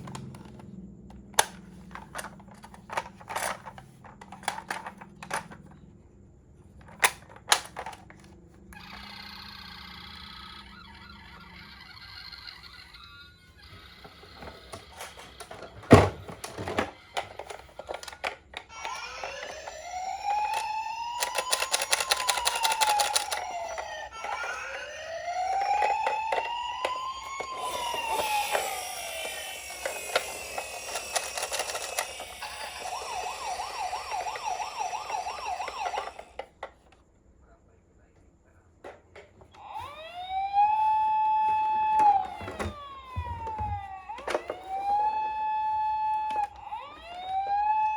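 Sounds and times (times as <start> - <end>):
toy siren wailing: 8.7 - 36.7, 39.4 - 47.9
rapid clicking rattle: 21.2 - 23.5.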